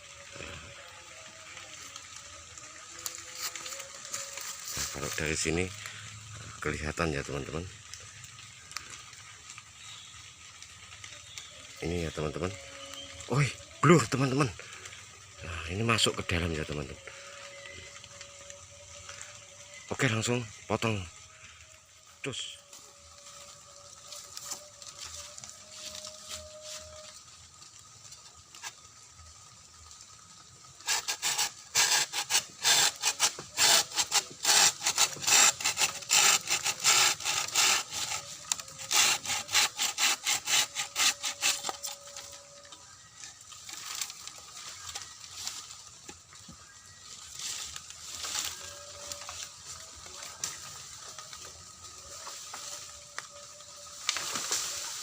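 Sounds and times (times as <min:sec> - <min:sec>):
saw cutting bamboo: 0:01.3 - 0:05.8, 0:22.7 - 0:27.2, 0:30.8 - 0:42.7, 0:43.5 - 0:46.2, 0:47.3 - 0:55.0.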